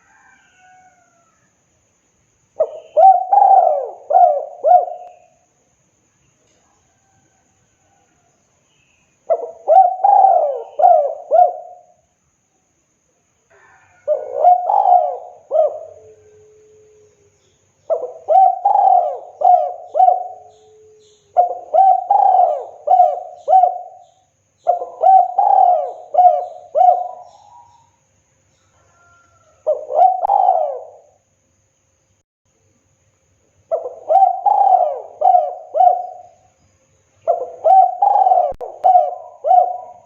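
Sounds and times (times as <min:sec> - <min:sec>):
dove cooing: 0:02.6 - 0:05.4, 0:09.3 - 0:12.0, 0:13.5 - 0:17.0, 0:17.9 - 0:28.0, 0:29.0 - 0:31.2, 0:33.7 - 0:36.5, 0:37.2 - 0:40.0.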